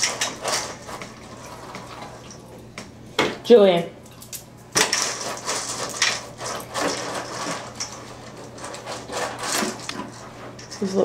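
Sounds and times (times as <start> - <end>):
dry kibble rattling in a bowl: 0.0 - 2.3, 4.2 - 11.0.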